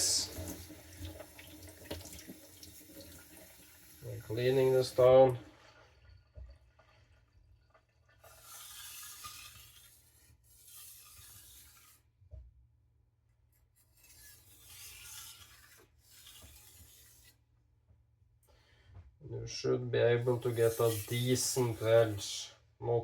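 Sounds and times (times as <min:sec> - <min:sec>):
hand rubbing wet sharpening stone: 0:08.3 - 0:12.1, 0:13.8 - 0:17.4, 0:20.3 - 0:22.2.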